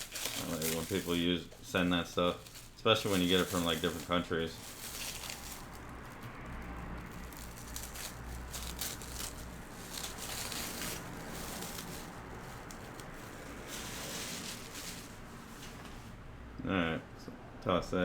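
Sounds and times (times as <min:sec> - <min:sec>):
newspaper rustling and crinkling: 0:00.0 - 0:16.2.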